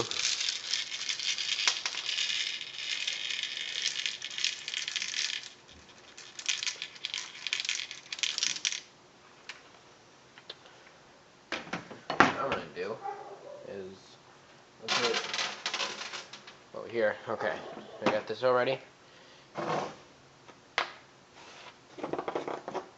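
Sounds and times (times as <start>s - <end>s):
steel bbs rattling: 0.0s - 8.9s.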